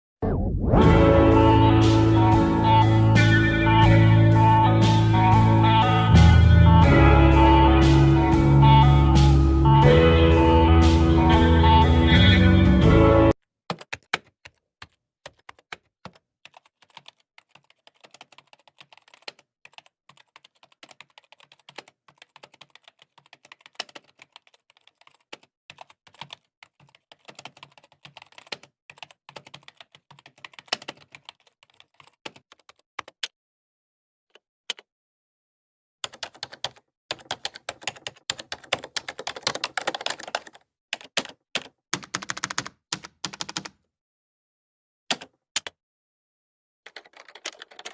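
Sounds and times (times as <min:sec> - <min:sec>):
computer keyboard typing: 0:13.7 - 0:33.3, 0:36.0 - 0:43.8, 0:45.1 - 0:45.8, 0:46.9 - 0:47.9.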